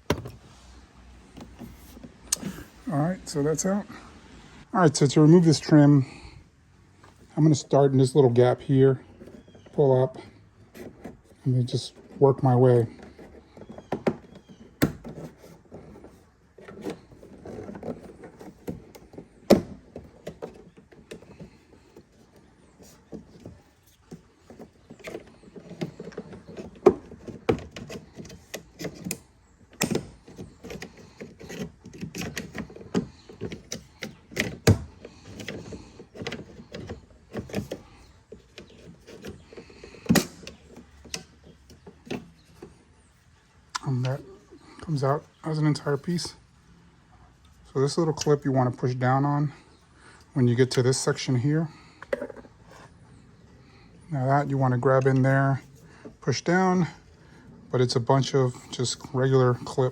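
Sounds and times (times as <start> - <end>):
plastic rubbing and handling: 0.0 - 4.3, 7.0 - 46.5.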